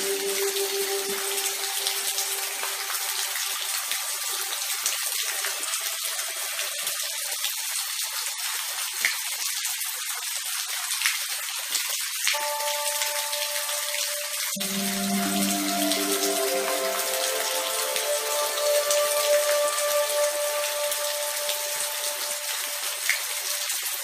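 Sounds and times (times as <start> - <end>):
steady rain falling: 0.0 - 24.0.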